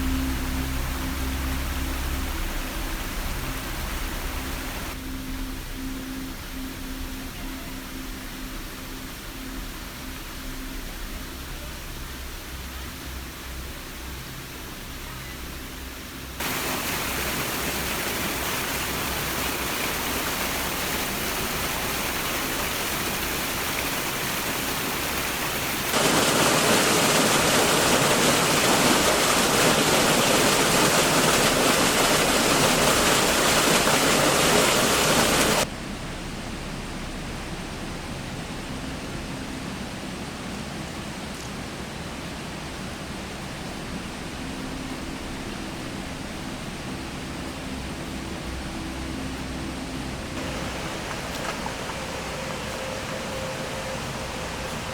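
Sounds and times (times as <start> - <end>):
steady rushing noise: 15.8 - 54.9.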